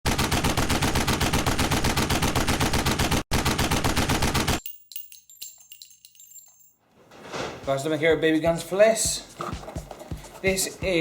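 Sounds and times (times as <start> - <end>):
rapid automatic gunfire: 0.0 - 4.6
faint light clinks: 4.7 - 7.0.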